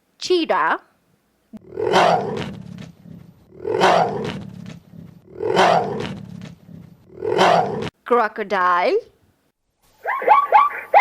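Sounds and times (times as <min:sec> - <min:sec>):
big cat calling: 0:01.6 - 0:02.6.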